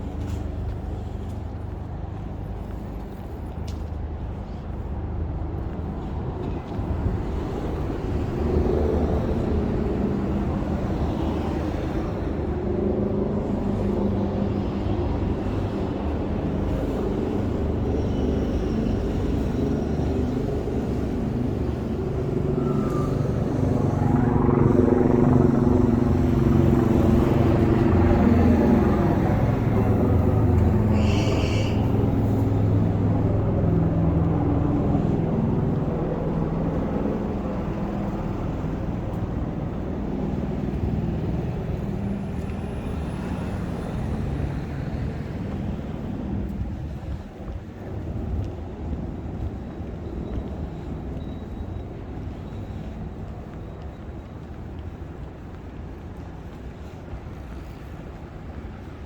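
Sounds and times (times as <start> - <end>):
vehicle engines running: 0.0 - 59.0
high-pitched squeal: 29.8 - 33.0.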